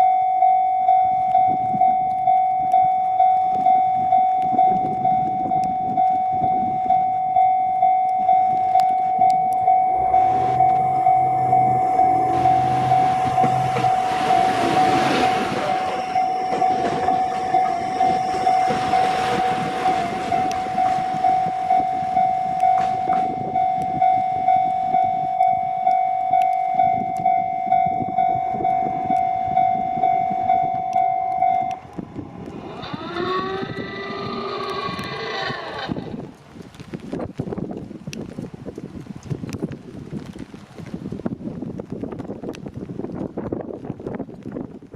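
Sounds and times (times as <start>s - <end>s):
level-crossing alarm bell: 0.0s - 35.4s
railcar rumbling past: 8.4s - 36.9s
rising whine: 8.6s - 24.0s, 28.3s - 36.4s.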